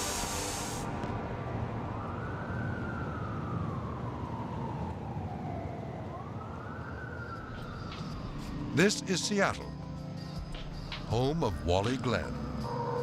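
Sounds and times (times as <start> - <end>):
emergency siren wailing: 0.8 - 9.6.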